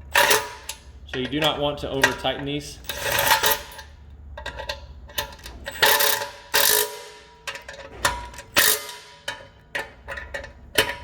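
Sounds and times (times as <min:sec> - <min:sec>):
ratchet wrench clicking: 0:04.6 - 0:07.7, 0:08.6 - 0:09.5.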